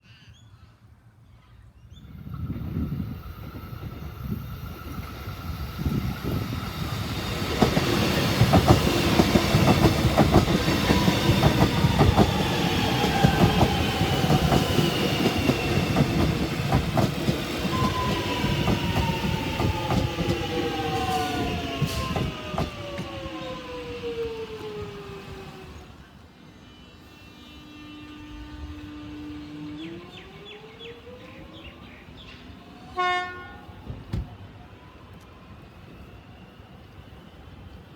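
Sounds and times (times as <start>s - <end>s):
train rumble: 2.0s - 26.3s
train wheels clicking over rail joints: 6.0s - 23.3s.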